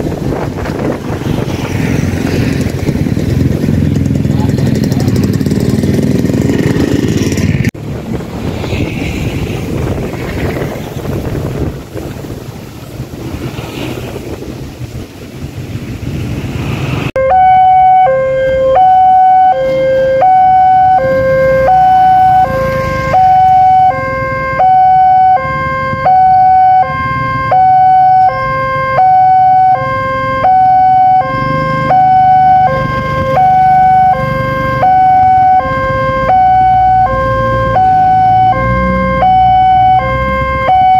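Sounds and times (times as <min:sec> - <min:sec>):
rumbling background noise: 0:00.0 - 0:17.2
two-tone crossing alarm: 0:17.2 - 0:40.9.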